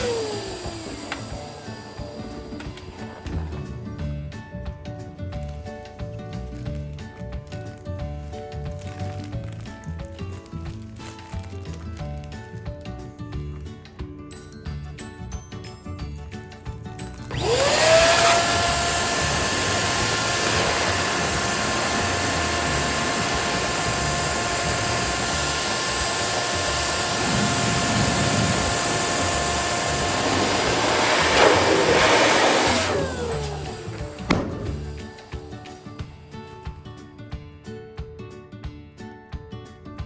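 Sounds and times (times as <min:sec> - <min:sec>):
balloon inflator air rush: 0:00.0 - 0:04.0, 0:17.2 - 0:35.9
motor whine: 0:00.0 - 0:04.0, 0:17.3 - 0:35.8.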